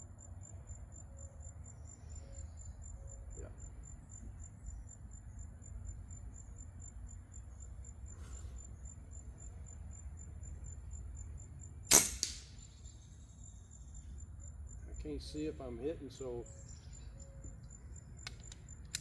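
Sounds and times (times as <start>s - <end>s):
insects chirring: 0.0s - 19.0s
gunshot: 11.9s - 12.6s.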